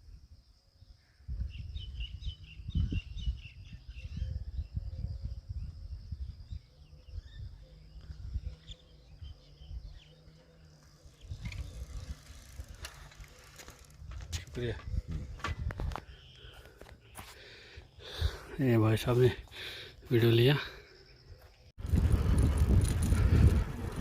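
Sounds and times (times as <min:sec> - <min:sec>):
faint insect drone: 0:00.0 - 0:24.0
birds chirping: 0:00.8 - 0:24.0
low rumble on microphone: 0:21.8 - 0:24.0.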